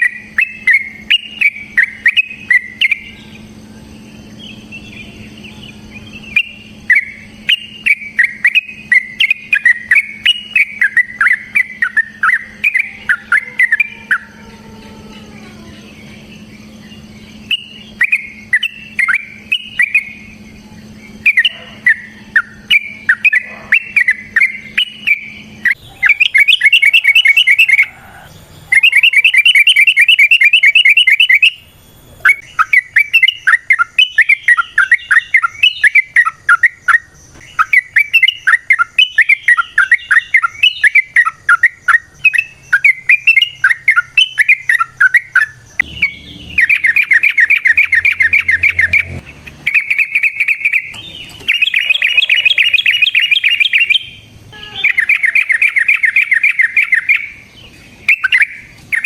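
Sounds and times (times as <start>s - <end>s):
bird chattering notes: 4.3s - 59.0s
bird rattling trills: 21.1s - 59.0s.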